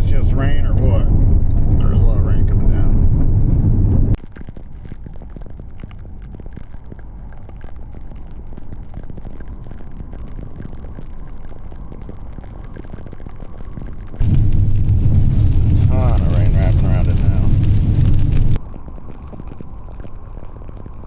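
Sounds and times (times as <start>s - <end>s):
loud low rumble: 0.0s - 4.2s, 14.2s - 18.6s
heavy rain on vehicle roof: 14.2s - 18.6s.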